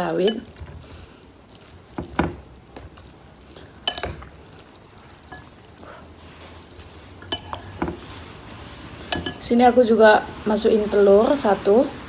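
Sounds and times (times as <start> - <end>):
utensil clinking against cookware: 1.7 - 5.7, 6.8 - 9.8.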